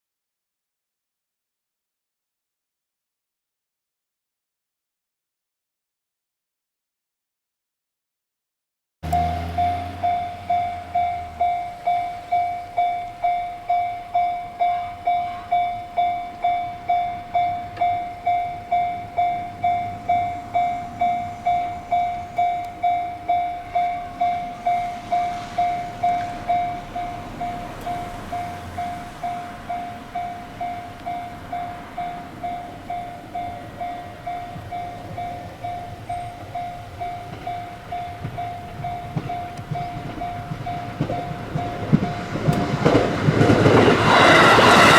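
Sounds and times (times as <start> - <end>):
level crossing alarm ringing: 9.0 - 44.9
train rumbling: 9.0 - 44.9.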